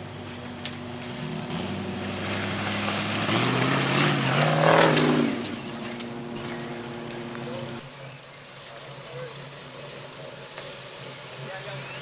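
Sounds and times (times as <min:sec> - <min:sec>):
engine revving: 0:00.0 - 0:07.9.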